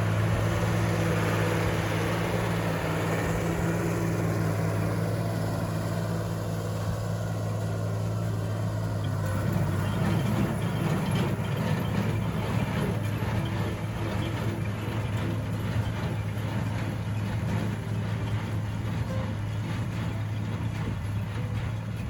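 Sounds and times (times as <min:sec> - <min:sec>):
tractor engine droning: 0:00.0 - 0:22.0
rattling mechanical clatter: 0:08.2 - 0:22.0.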